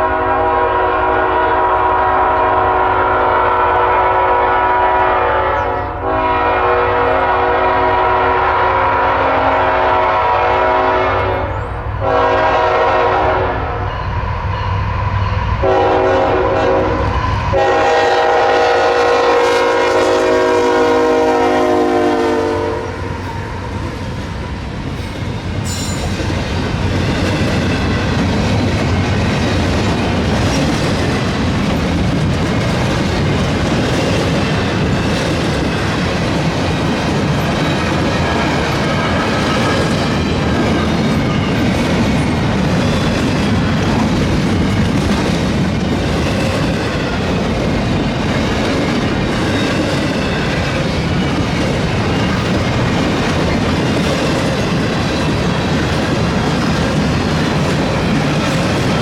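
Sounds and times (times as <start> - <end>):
locomotive air horn blasts: 0.0 - 14.8, 15.6 - 23.6
train wheels rumbling and clacking: 0.0 - 59.0.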